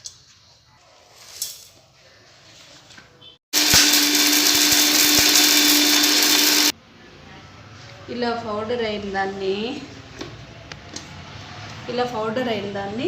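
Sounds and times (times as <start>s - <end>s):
electric mixer grinder running: 3.6s - 6.7s.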